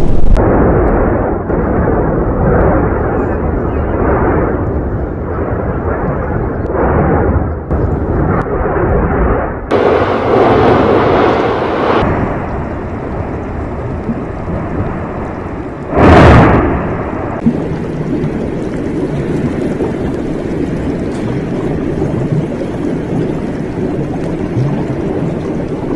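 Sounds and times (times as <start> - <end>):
loud boom: 0.0 - 13.7, 15.9 - 17.6
deep volcanic rumble: 0.0 - 25.9.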